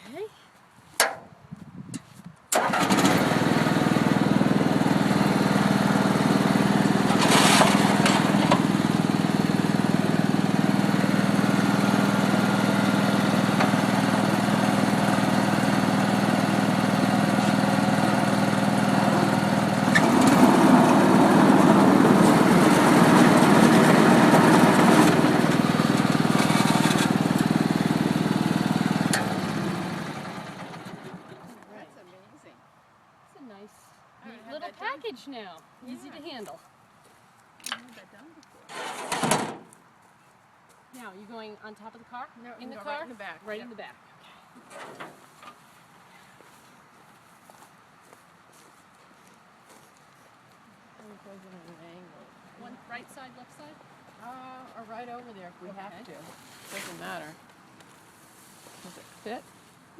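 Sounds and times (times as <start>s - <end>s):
baler motor running: 2.7s - 31.4s.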